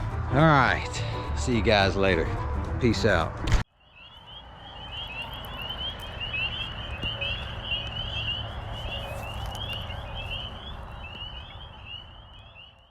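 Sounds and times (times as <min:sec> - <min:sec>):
small animals chirping: 0:03.8 - 0:12.9.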